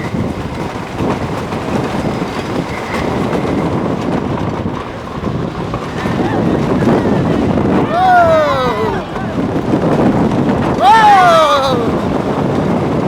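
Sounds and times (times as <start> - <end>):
roller coaster wheels rumbling: 0.0 - 13.0.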